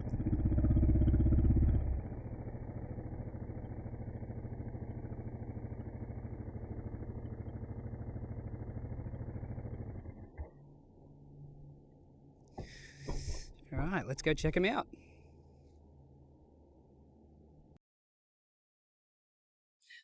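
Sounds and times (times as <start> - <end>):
motorcycle engine idling: 0.0 - 14.0.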